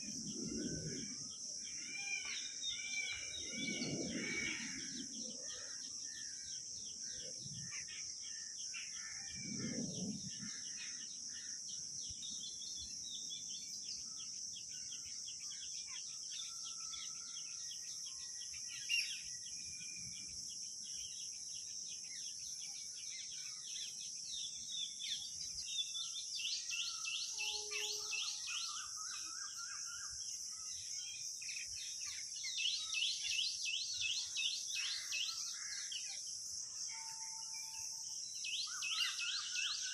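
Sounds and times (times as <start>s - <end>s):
high-pitched insect drone: 0.0s - 6.4s.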